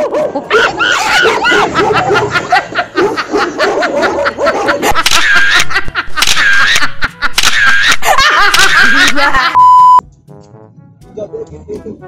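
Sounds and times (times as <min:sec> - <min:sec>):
people laughing loudly: 0:00.0 - 0:09.6.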